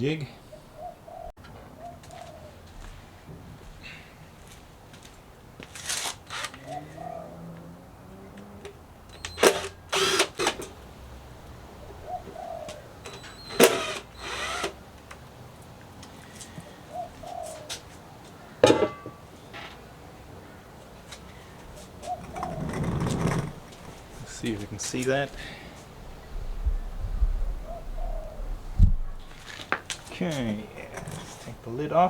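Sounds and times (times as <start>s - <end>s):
dove cooing faintly: 0.4s - 3.2s, 6.6s - 9.3s, 11.0s - 13.9s, 16.1s - 18.6s, 20.4s - 24.6s, 25.3s - 31.8s
power drill driving screws: 9.2s - 10.7s, 13.1s - 14.8s.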